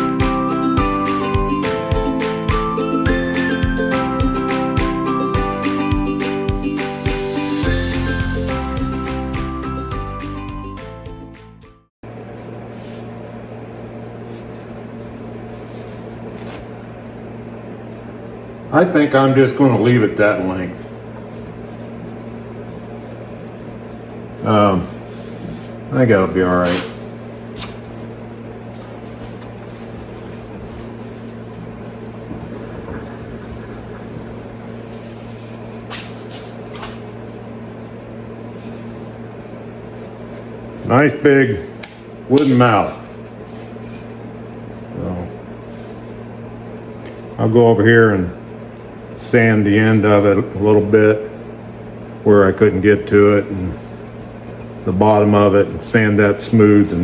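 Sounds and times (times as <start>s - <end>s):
steady electric hum: 0.0s - 10.8s, 12.0s - 57.0s
background music: 0.0s - 11.9s.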